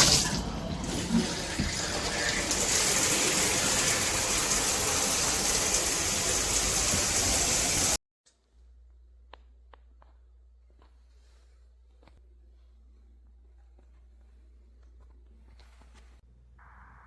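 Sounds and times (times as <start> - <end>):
water spraying from shower head: 0.0 - 8.0.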